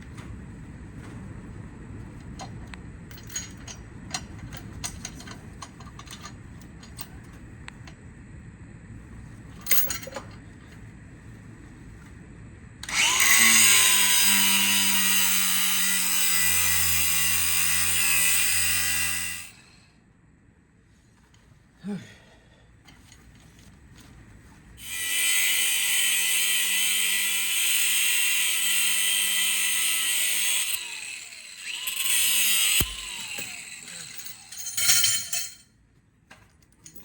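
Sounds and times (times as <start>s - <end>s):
handheld power tool running: 12.8s - 19.6s, 24.8s - 34.8s.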